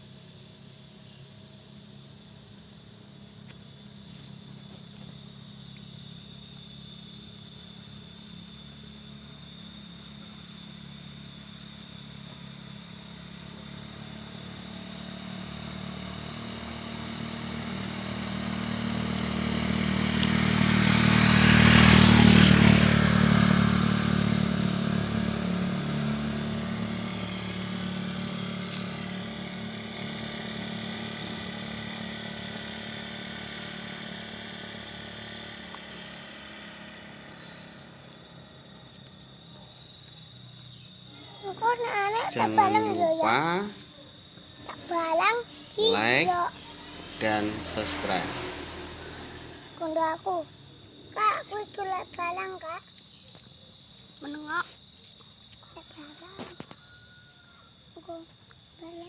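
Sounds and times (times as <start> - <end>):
steady high-pitched whine: 0.0 - 59.0
vehicle engine passing: 14.4 - 39.7, 41.0 - 51.8.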